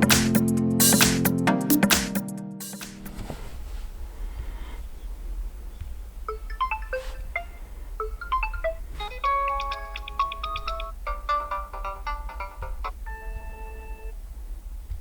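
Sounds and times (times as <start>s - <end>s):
bell-like phone alarm melody: 6.3s - 14.1s.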